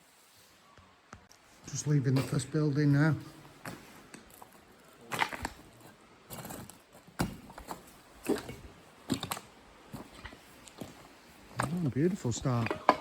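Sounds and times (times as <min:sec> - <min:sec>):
footsteps on rough ground: 0:03.3 - 0:13.0.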